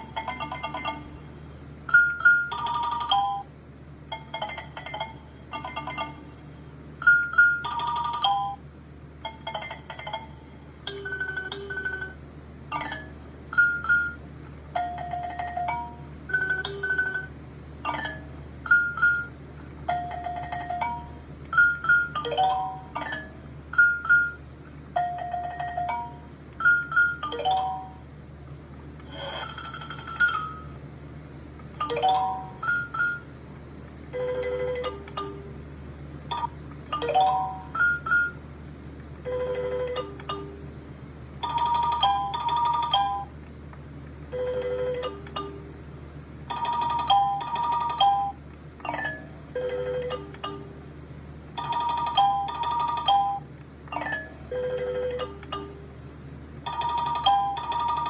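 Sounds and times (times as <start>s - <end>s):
low steady hum: 0.0s - 58.0s.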